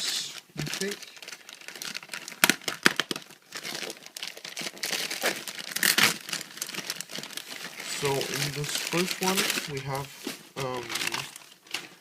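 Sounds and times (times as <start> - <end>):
packaging crinkling and tearing: 0.0 - 12.0.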